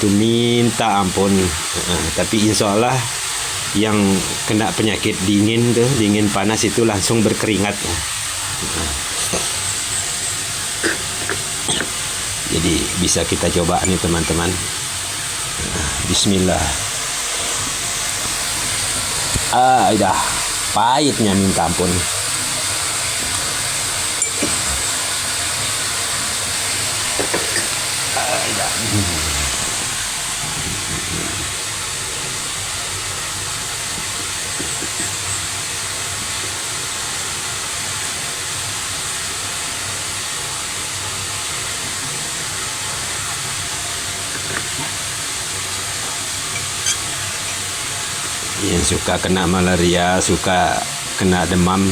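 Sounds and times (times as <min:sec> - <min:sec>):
steady hissing: 0:00.0 - 0:51.9.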